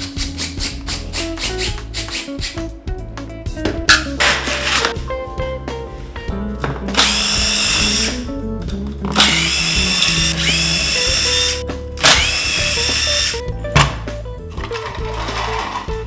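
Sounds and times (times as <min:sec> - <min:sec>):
background music: 0:00.0 - 0:16.0
electric screwdriver whining: 0:07.0 - 0:08.3, 0:09.1 - 0:13.4.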